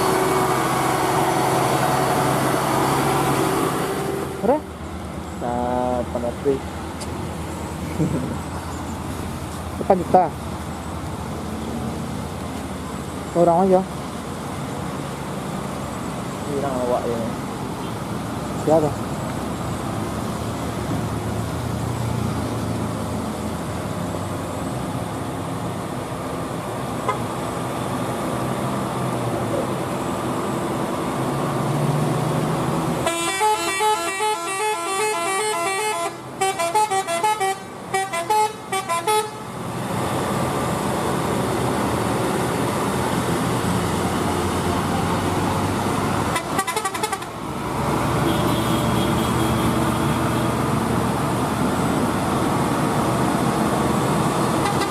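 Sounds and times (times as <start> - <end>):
heavy vehicle engines: 0.0 - 54.9
multi-tone vehicle horn: 27.1 - 27.3, 33.0 - 39.5, 46.3 - 47.4, 48.2 - 50.6, 54.6 - 54.9.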